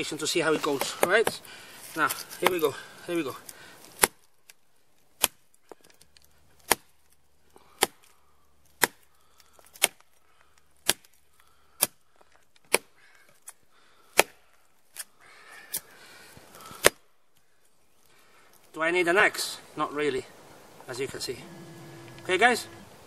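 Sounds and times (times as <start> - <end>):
machete chopping wood: 0.6 - 1.4, 4.0 - 4.2, 6.6 - 6.9, 7.8 - 8.1, 8.7 - 9.1, 10.8 - 11.1, 12.7 - 12.9, 14.2 - 14.4, 16.8 - 17.0.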